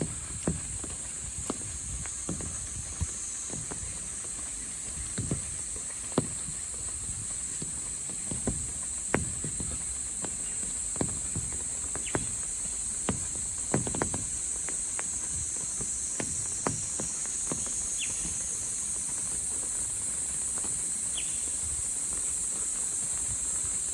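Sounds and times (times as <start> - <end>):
irregular taps and knocks: 0.0 - 18.5
high-pitched insect chorus: 0.0 - 23.9.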